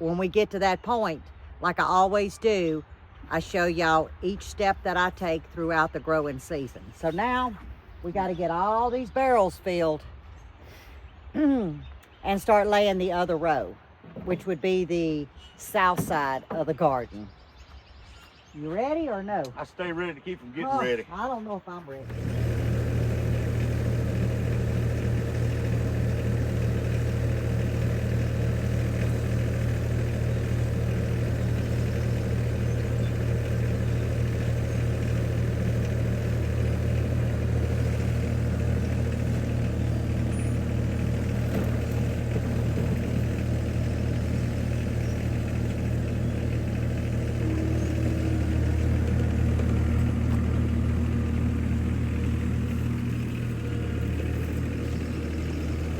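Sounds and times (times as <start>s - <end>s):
skid steer engine running: 22.0s - 55.9s.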